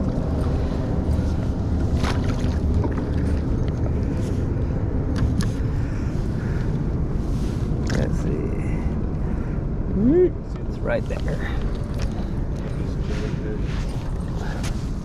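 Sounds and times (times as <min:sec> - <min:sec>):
boat motor rumbling: 0:00.0 - 0:15.0.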